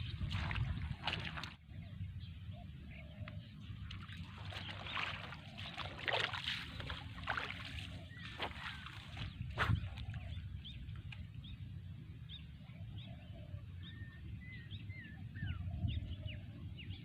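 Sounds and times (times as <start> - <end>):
water sloshing and splashing: 0.0 - 1.7, 3.6 - 11.5.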